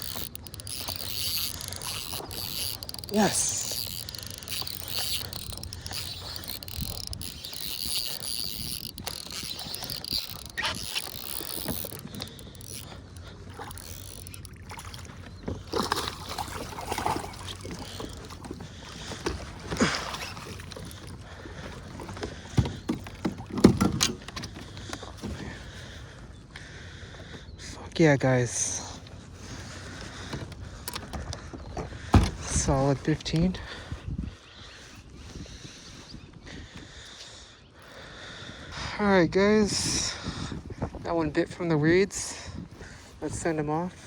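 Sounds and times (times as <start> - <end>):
fishing reel whirring: 0.0 - 21.2.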